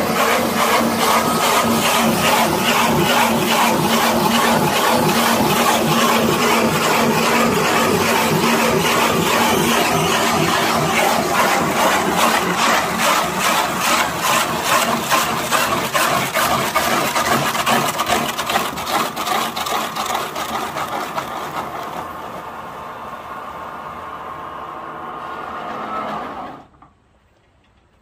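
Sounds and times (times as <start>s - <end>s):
steel tool scraping wood: 0.0s - 21.1s
lathe running hum: 0.0s - 26.6s.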